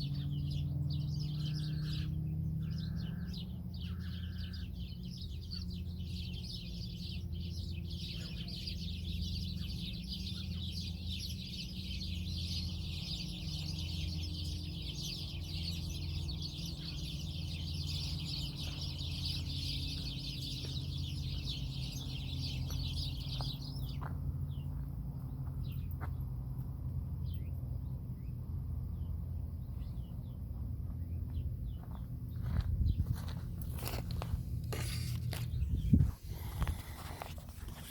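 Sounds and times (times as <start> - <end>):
scattered bird chirps: 0.0 - 24.8
flock of birds chattering: 0.0 - 25.8, 31.0 - 37.9.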